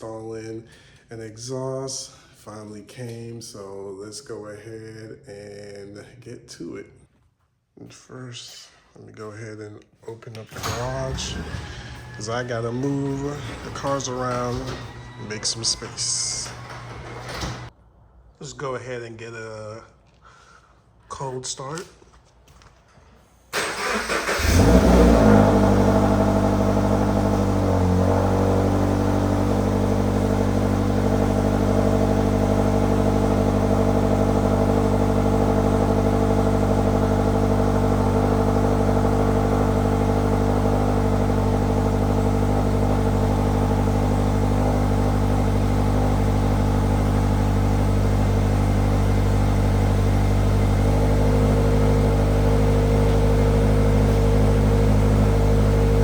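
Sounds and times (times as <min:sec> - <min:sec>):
car engine starting and idling: 0:10.3 - 0:17.7, 0:23.5 - 0:56.0.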